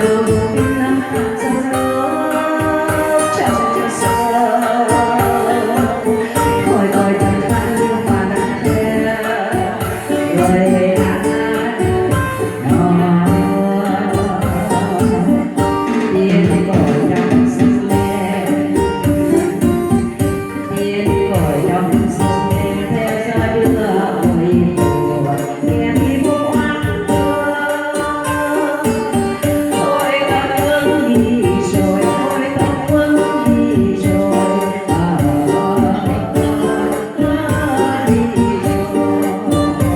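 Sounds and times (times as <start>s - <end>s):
song with steady beat: 0.0s - 39.9s.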